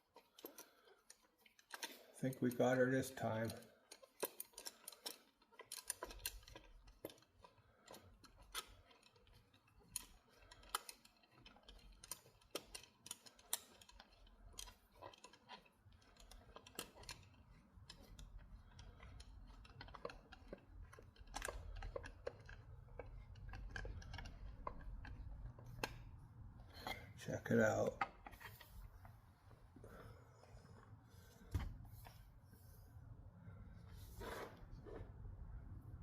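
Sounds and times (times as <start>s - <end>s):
rifle parts clicking and tapping: 0.1s - 27.0s.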